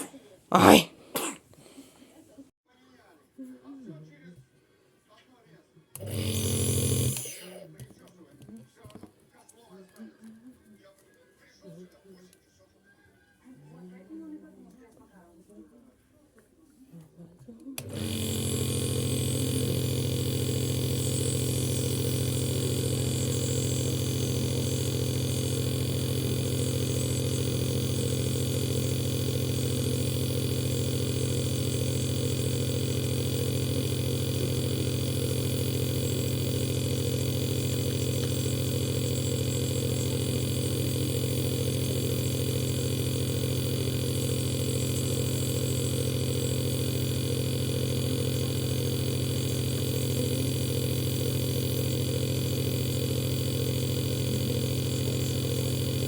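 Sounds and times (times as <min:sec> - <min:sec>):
nebulizer motor hum: 0:00.0 - 0:01.9, 0:06.0 - 0:07.7, 0:17.8 - 0:56.0.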